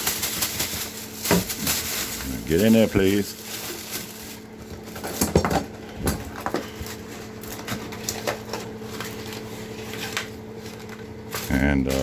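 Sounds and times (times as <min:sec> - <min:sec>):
debris knocking into trash bag: 0:00.0 - 0:06.7.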